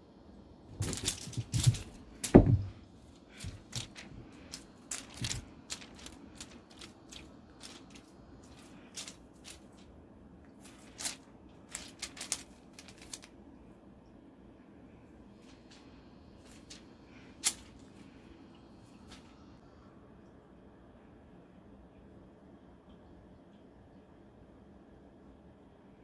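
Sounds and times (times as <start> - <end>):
cat playing clicks and taps: 0.7 - 13.4, 15.4 - 18.0.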